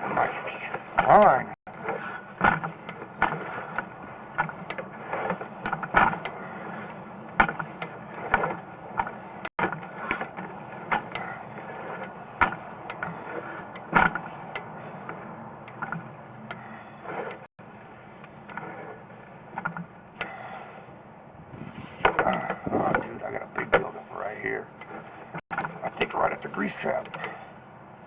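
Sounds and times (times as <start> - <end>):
cable and reel clicking: 0.6 - 20.7.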